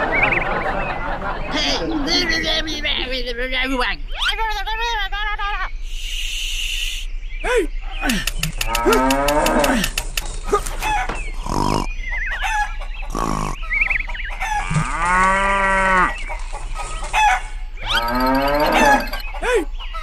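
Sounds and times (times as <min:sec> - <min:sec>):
gliding pitched animal-like calls: 0:07.8 - 0:19.4.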